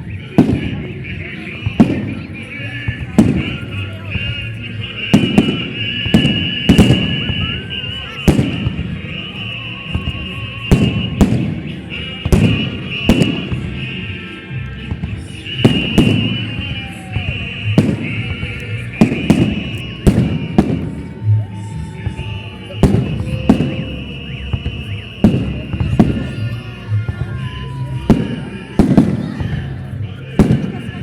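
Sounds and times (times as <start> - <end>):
fireworks bangs: 0.0 - 31.0.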